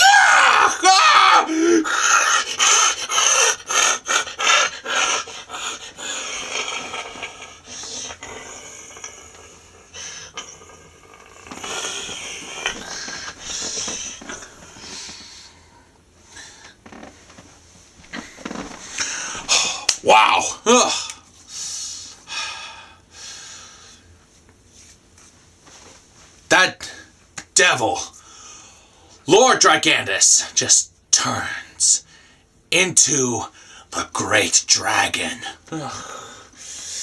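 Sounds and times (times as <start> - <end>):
person growling: 0.0 - 9.4, 19.4 - 21.1.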